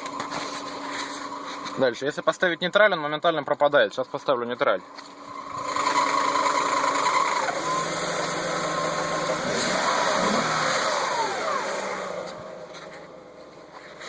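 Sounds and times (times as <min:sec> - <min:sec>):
car engine running: 0:00.0 - 0:02.6, 0:04.1 - 0:14.0
transmission whine: 0:04.0 - 0:14.0.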